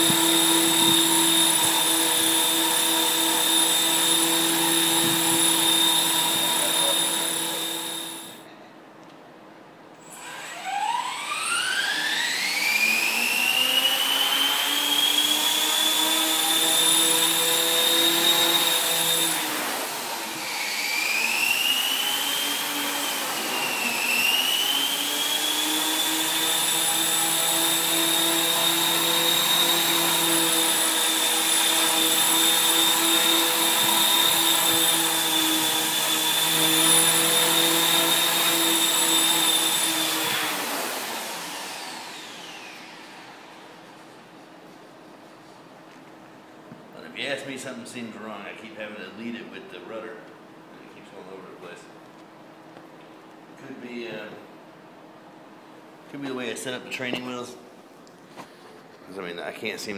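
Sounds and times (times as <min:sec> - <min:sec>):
rc helicopter motor whine: 0:00.0 - 0:08.4, 0:10.0 - 0:43.8.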